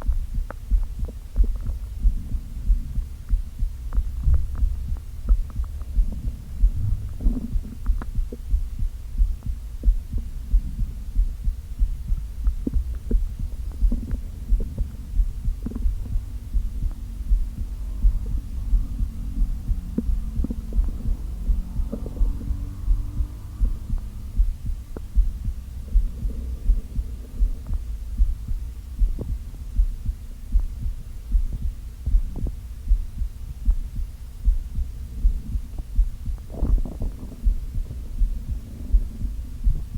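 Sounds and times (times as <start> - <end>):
stomach gurgling and growling: 0.0 - 8.6, 12.5 - 24.2, 35.1 - 39.9
low stomach thumping: 0.0 - 39.9.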